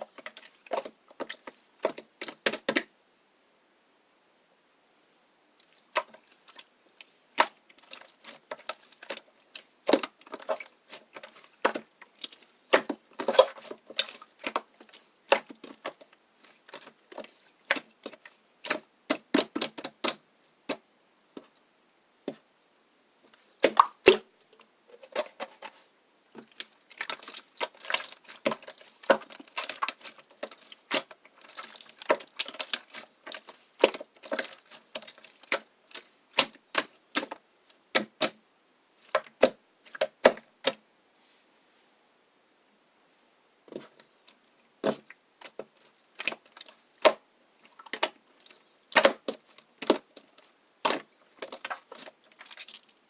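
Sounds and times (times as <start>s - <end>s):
slime squished by hand: 5.6s - 20.8s, 23.6s - 24.3s, 26.4s - 38.4s, 44.8s - 53.0s.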